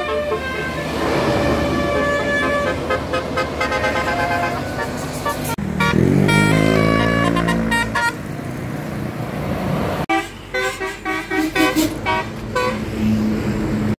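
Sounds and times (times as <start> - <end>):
multi-tone musical bus horn: 0.0 - 8.3, 10.1 - 13.0
road traffic noise: 0.0 - 14.0.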